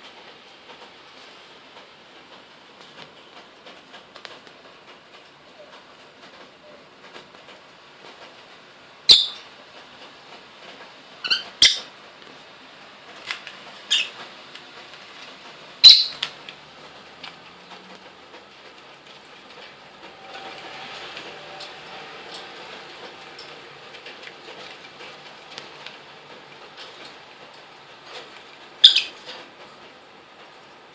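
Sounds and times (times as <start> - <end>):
bird chirping: 9.1 - 9.4, 11.2 - 11.9, 13.9 - 14.2, 15.8 - 16.3, 28.8 - 29.2.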